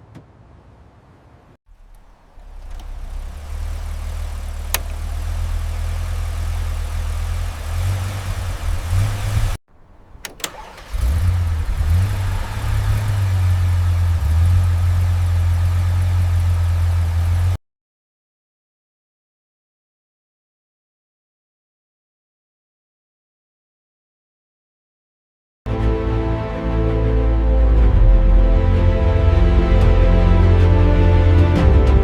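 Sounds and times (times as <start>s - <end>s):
car engine running: 1.7s - 17.6s.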